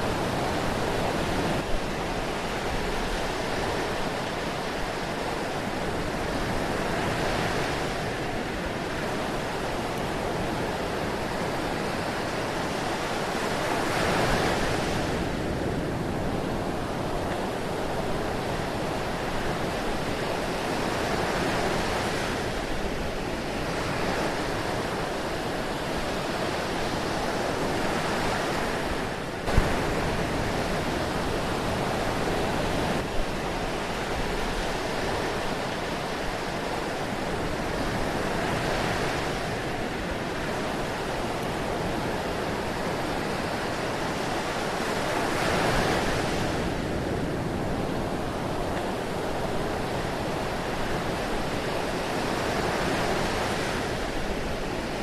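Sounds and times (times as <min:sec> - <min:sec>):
ocean surf washing: 0:00.0 - 0:55.0.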